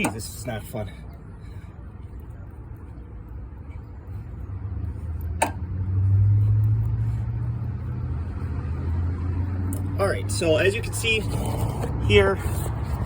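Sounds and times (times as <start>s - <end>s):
vehicle engine running: 4.1s - 11.4s.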